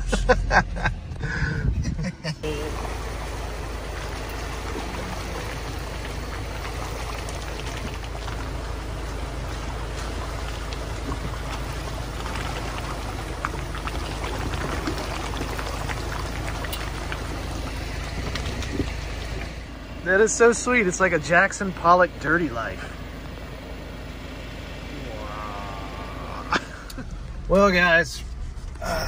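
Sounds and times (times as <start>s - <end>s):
low vehicle rumble: 0.0s - 29.0s
tyres splattering mud: 2.4s - 23.3s.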